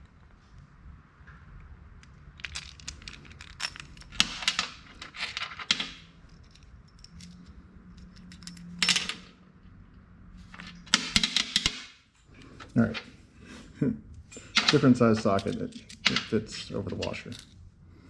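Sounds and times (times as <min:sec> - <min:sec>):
metal sockets and washers clinking: 0:02.4 - 0:09.4, 0:10.5 - 0:11.8, 0:14.3 - 0:17.6.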